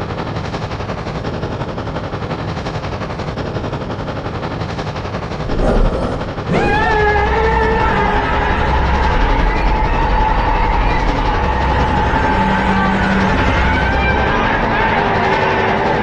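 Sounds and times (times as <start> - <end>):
train chugging clatter: 0.0 - 16.0
train whistle blast: 6.5 - 15.8
loud chord train whistle: 6.5 - 16.0.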